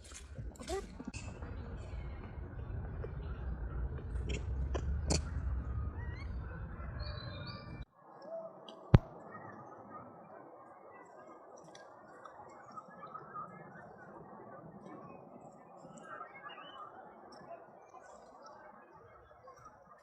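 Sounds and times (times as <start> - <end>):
low rumble: 0.4 - 7.9.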